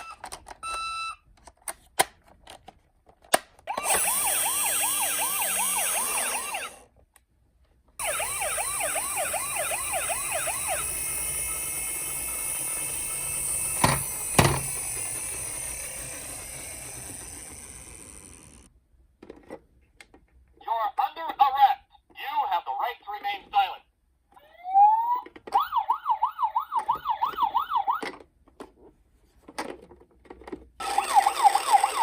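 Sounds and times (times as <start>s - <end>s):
toy electronic siren yelping: 3.7s - 6.8s, 8.0s - 18.4s, 24.4s - 28.1s, 30.8s - 32.0s.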